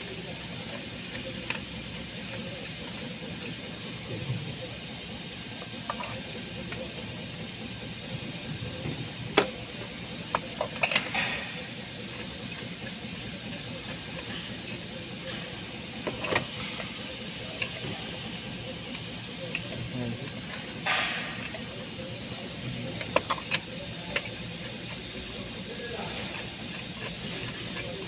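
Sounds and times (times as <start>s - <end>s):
hand tools clicking on engine: 0.6s - 3.9s, 8.8s - 21.7s, 23.0s - 28.0s.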